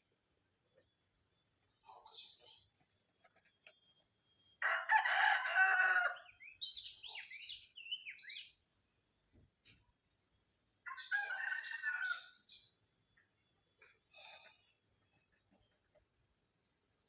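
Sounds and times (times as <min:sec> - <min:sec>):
rooster crowing: 0:04.6 - 0:06.3, 0:10.9 - 0:12.4
small bird chirping: 0:06.3 - 0:08.6.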